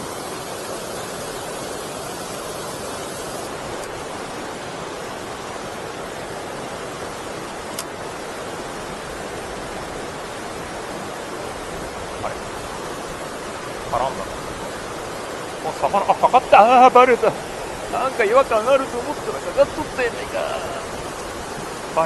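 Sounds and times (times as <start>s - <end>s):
water rushing over a weir: 0.0s - 22.0s.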